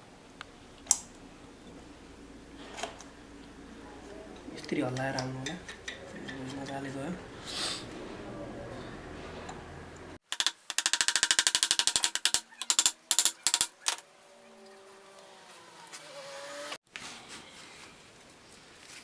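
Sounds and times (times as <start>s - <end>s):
motorcycle engine revving: 14.5s - 16.8s.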